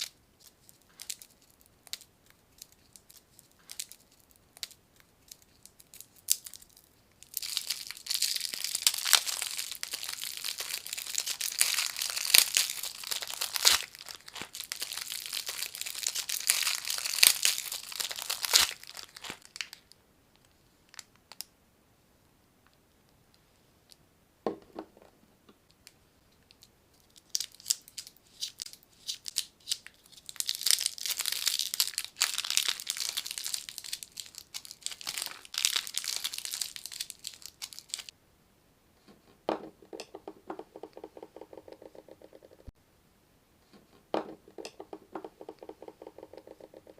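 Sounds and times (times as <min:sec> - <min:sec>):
candy wrappers crinkling: 0:00.0 - 0:20.0, 0:26.5 - 0:38.1.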